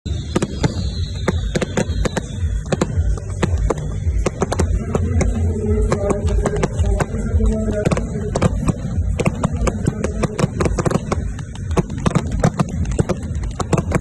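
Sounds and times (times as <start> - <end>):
high falling whistle: 0.1 - 4.2
fireworks bangs and crackles: 0.1 - 14.0.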